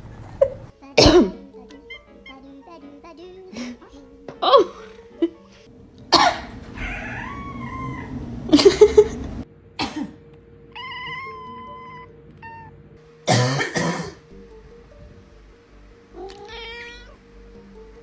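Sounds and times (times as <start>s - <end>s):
harsh coughing: 0.4s - 1.4s, 4.4s - 5.0s, 6.0s - 10.2s, 13.3s - 14.2s
cat meowing: 6.1s - 9.4s, 10.7s - 12.8s, 16.2s - 17.2s.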